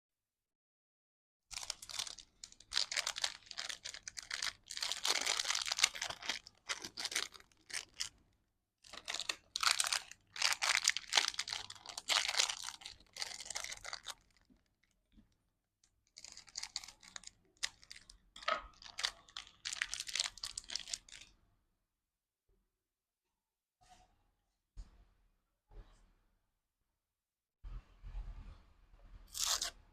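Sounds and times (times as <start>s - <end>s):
candy wrappers crinkling: 1.5s - 8.2s, 8.8s - 14.9s, 16.1s - 21.3s, 29.3s - 29.7s.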